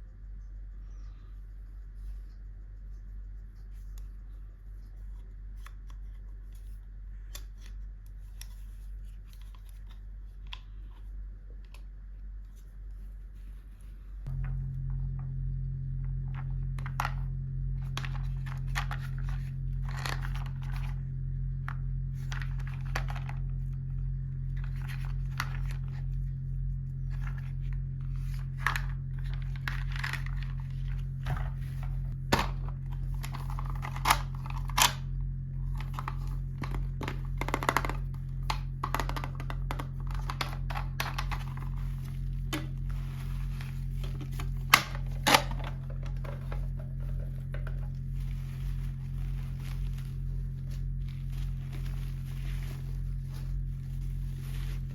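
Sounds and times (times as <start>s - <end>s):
low hum: 0.0s - 54.9s
toy packaging clicks and taps: 35.8s - 41.6s
plastic snapping: 44.1s - 47.9s.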